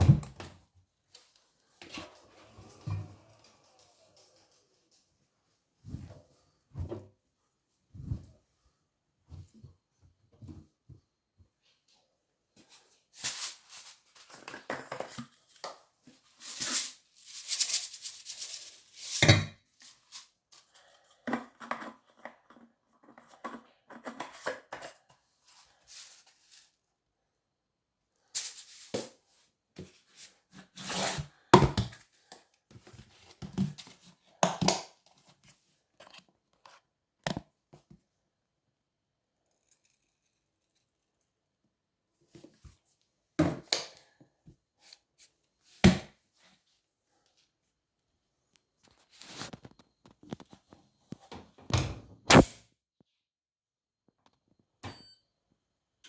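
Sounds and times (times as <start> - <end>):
rustling and scraping: 12.7 - 19.2, 48.8 - 51.6.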